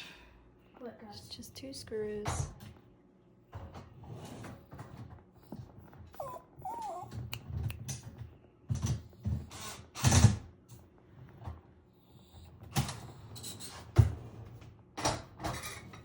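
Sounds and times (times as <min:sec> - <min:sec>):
dog whining: 0:05.4 - 0:07.7, 0:11.9 - 0:13.6.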